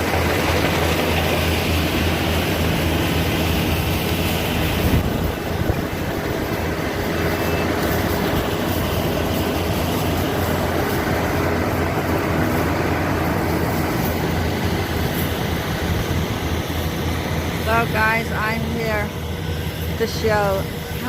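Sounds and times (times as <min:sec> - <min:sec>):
harvesting machine engine drone: 0:00.0 - 0:21.0.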